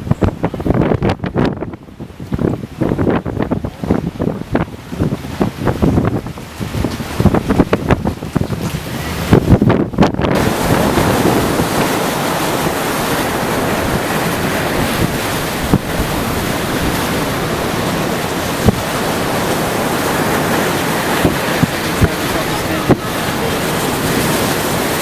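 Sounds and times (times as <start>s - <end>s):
strong wind: 0.0s - 25.0s
surf roaring: 0.0s - 25.0s
wind buffeting microphone: 0.0s - 25.0s.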